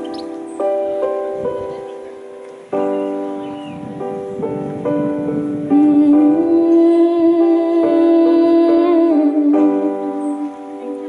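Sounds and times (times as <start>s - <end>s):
accompaniment chords: 0.0s - 11.0s
person humming a held note: 5.7s - 11.0s.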